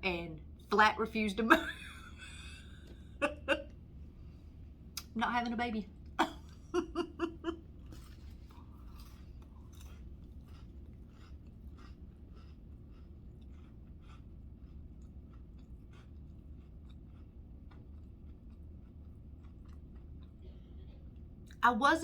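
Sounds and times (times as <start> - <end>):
faint low hum: 0.0 - 22.0
person chewing crackers: 7.5 - 21.6.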